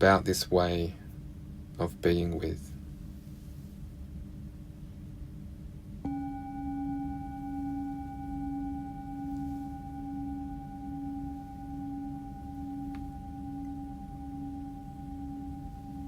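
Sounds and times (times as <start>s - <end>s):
singing bowl ringing: 6.0s - 16.0s.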